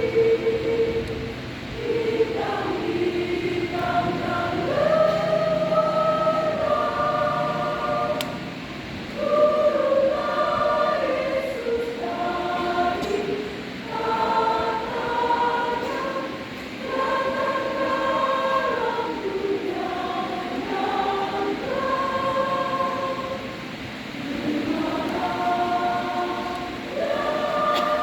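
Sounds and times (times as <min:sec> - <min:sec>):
choir singing in parts: 0:00.0 - 0:28.0.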